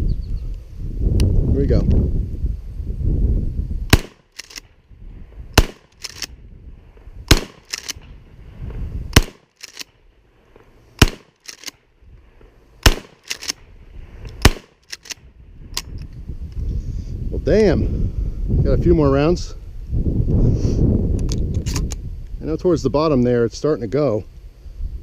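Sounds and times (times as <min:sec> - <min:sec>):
shotgun shots: 0:03.9 - 0:04.7, 0:05.6 - 0:06.3, 0:07.3 - 0:08.0, 0:09.1 - 0:09.9, 0:11.0 - 0:11.7, 0:12.8 - 0:13.6, 0:14.4 - 0:15.1
shotgun pump racking clacks: 0:04.3 - 0:04.7, 0:05.9 - 0:06.3, 0:07.5 - 0:08.0, 0:09.6 - 0:09.9, 0:11.3 - 0:11.8, 0:12.9 - 0:13.6, 0:14.3 - 0:15.2.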